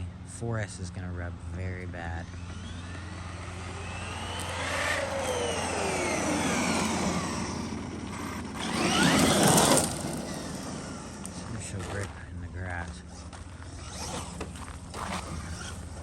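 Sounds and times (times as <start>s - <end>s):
electric motor whining: 0.0s - 16.0s.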